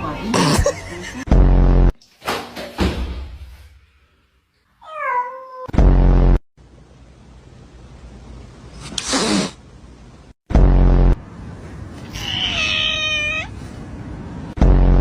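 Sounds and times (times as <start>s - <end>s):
cat meowing: 12.0s - 13.5s.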